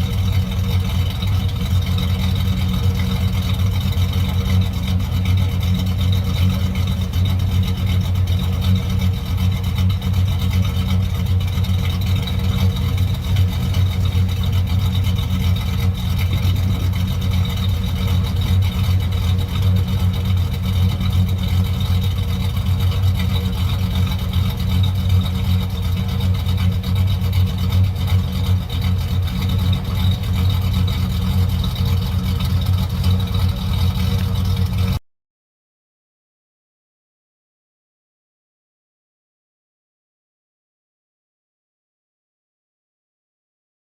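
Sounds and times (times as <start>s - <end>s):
truck engine idling: 0.0s - 35.0s.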